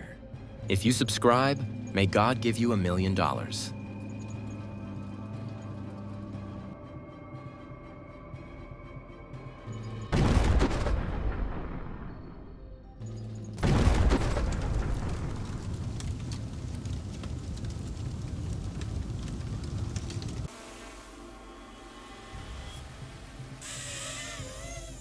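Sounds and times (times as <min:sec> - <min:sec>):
faint background music: 0:00.0 - 0:15.7
loud explosion blasts: 0:10.1 - 0:12.5, 0:13.6 - 0:20.5
crackling rumble with sharp pops: 0:10.2 - 0:12.0, 0:13.6 - 0:20.8.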